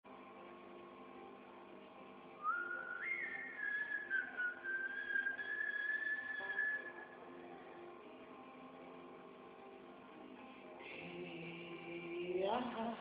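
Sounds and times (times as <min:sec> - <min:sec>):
faint steady hum: 0:00.1 - 0:13.0
person whistling a note: 0:02.4 - 0:07.1.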